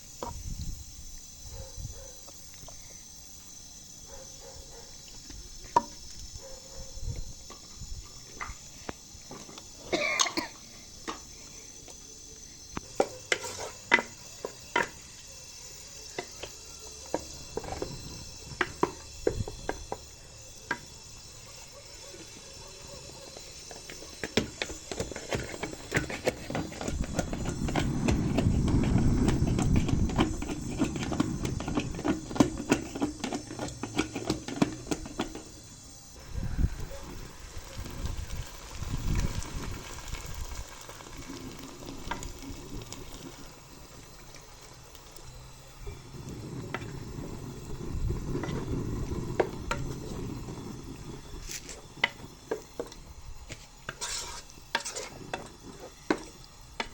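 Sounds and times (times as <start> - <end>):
food sizzling in a pan: 0.0 - 56.9
utensil scraping and clicking on pan: 53.9 - 55.5.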